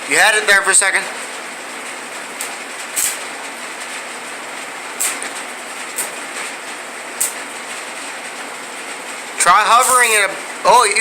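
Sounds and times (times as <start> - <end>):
welding arc frying hiss: 2.2 - 4.0, 4.6 - 7.9, 9.4 - 11.0
sharp welding pops: 2.3 - 4.0, 4.9 - 7.8, 9.8 - 10.3.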